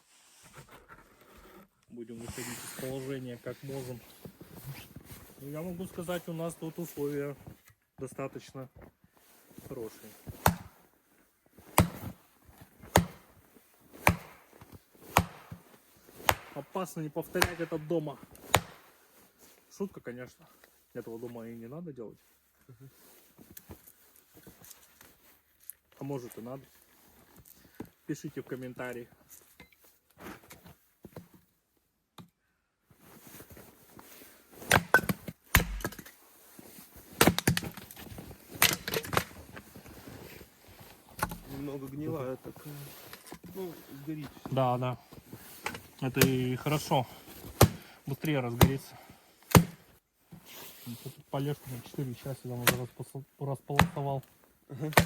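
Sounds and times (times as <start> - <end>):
axe chopping wood: 10.4 - 10.7, 11.7 - 12.2, 12.9 - 13.3, 14.0 - 14.5, 15.1 - 15.6, 16.2 - 16.7, 17.3 - 18.9, 34.7 - 36.0, 47.6 - 47.8, 48.6 - 48.8, 49.5 - 49.8, 53.8 - 54.0.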